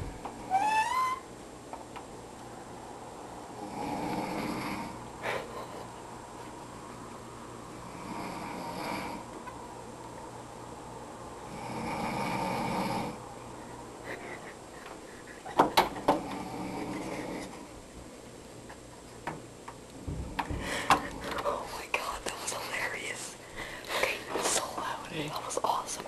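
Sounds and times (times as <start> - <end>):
man snoring: 3.6 - 5.0, 7.8 - 9.3, 11.5 - 13.2, 16.2 - 17.4.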